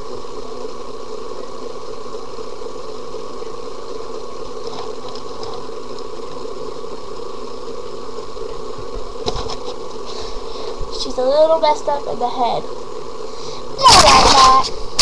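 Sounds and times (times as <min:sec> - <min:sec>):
microphone background hum and hiss: 0:00.0 - 0:15.0
faint high ticks: 0:01.8 - 0:08.5.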